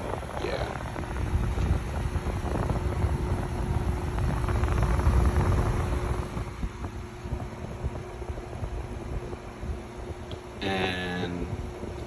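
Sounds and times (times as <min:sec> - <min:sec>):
window air conditioner humming: 0:00.0 - 0:12.0.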